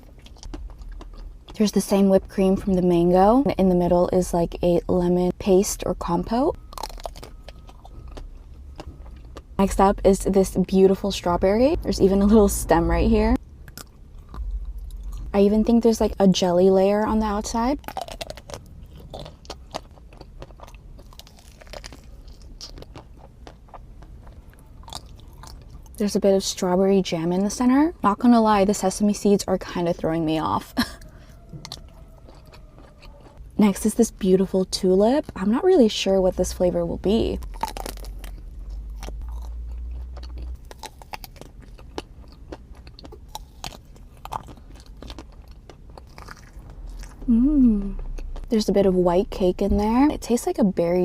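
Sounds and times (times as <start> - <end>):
person chewing pastry: 0.0 - 1.6, 6.5 - 9.6, 13.4 - 15.4, 17.8 - 26.0, 30.8 - 33.6, 37.4 - 48.6.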